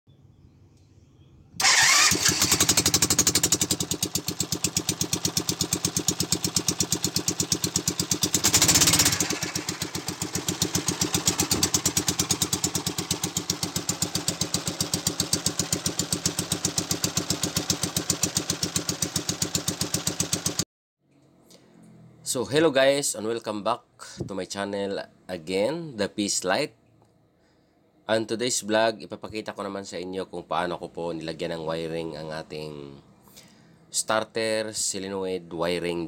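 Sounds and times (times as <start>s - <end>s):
small engine starting and running: 1.6s - 20.6s.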